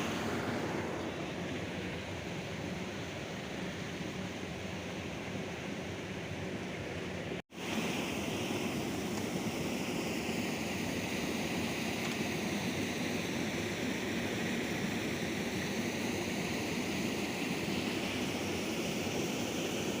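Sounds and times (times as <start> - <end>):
river water flowing: 0.0 - 20.0.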